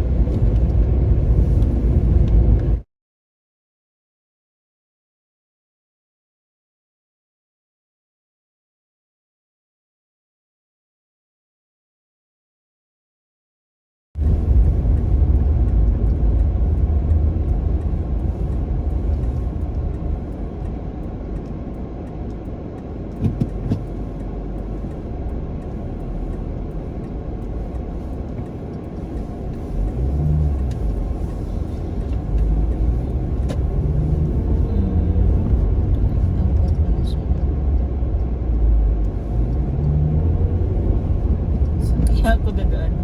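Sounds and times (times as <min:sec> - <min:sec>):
car driving through snow: 0:00.0 - 0:02.8, 0:14.2 - 0:43.0.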